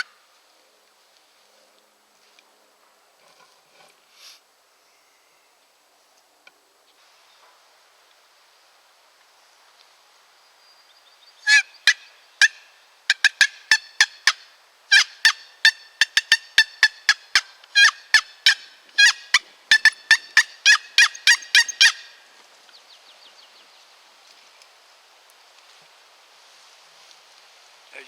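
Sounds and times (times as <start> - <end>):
turkey call yelps: 11.5 - 12.6, 13.2 - 22.2.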